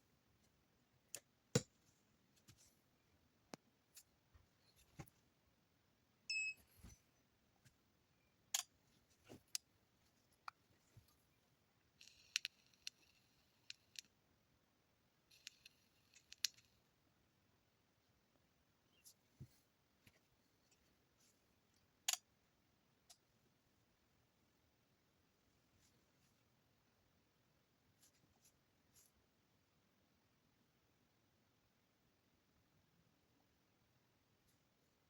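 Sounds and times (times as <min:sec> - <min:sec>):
short electronic beep: 0:06.3 - 0:06.6.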